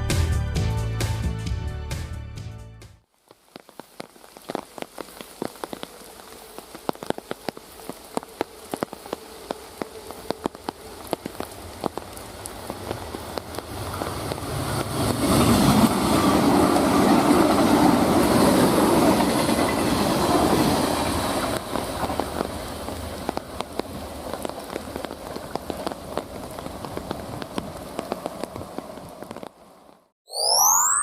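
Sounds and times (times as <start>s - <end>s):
rain patter: 3.1s - 19.6s, 20.4s - 30.1s
train passing on rails: 7.8s - 29.9s.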